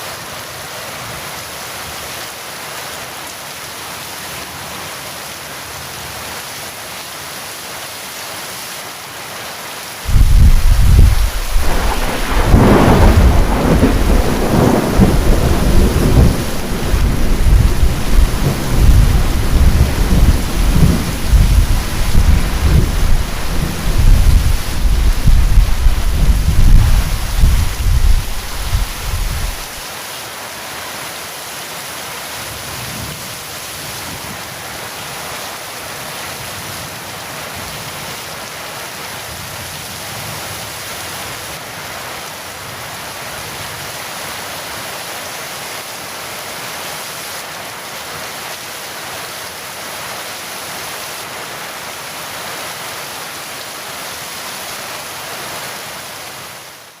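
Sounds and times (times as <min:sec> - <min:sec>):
heavy rain: 0:00.0 - 0:57.0
low thunder rumble: 0:10.1 - 0:29.8.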